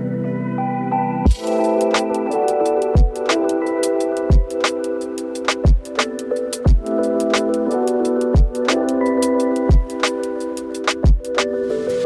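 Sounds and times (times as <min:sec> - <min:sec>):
kick drum: 0:01.3 - 0:01.5, 0:03.0 - 0:03.2, 0:04.3 - 0:04.6, 0:05.6 - 0:05.9, 0:06.7 - 0:06.9, 0:08.4 - 0:08.6, 0:09.7 - 0:09.9, 0:11.0 - 0:11.3
hi-hats: 0:01.3 - 0:12.0.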